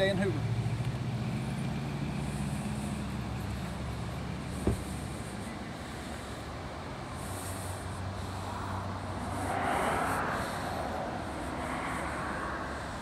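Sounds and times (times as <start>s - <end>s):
road traffic noise: 0.0s - 13.0s
vehicle passing: 0.0s - 13.0s.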